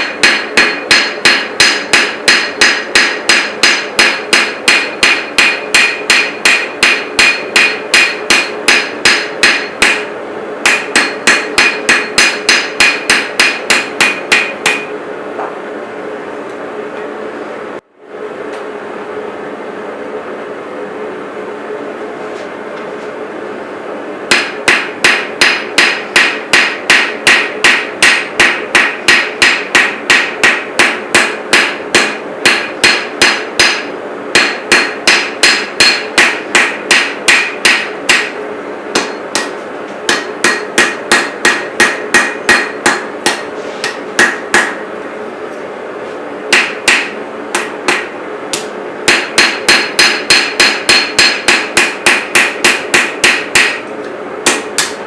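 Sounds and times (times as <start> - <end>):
hammer striking steel on anvil: 0.0 - 15.0, 24.3 - 44.8, 46.5 - 55.0.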